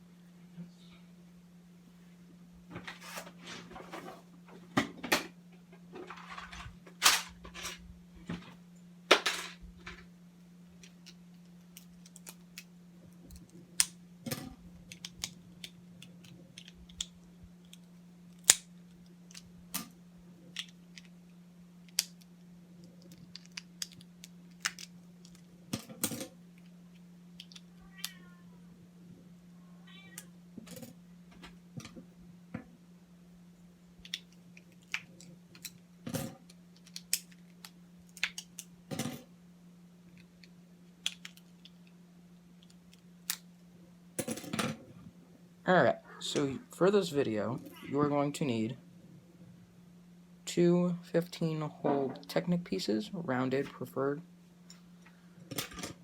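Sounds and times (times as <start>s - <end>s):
steady low hum: 0.0s - 56.0s
plastic toy pieces clicking: 36.8s - 38.7s.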